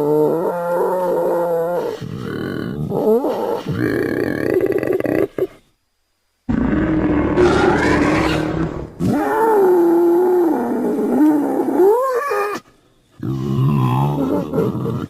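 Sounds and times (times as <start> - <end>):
rough noisy monster roar: 6.5 - 11.8
wavering pitched roar: 6.5 - 12.1.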